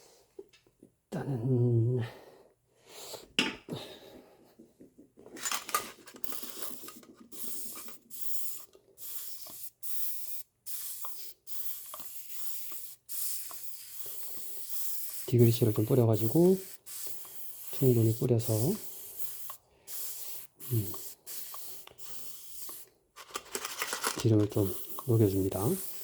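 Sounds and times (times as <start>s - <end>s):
aerosol spray hissing bursts: 6.8s - 22.8s, 24.4s - 26.0s.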